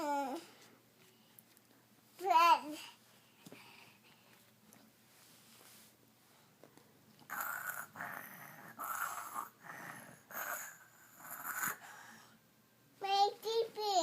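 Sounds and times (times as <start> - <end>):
child pretend snoring: 7.3 - 12.0.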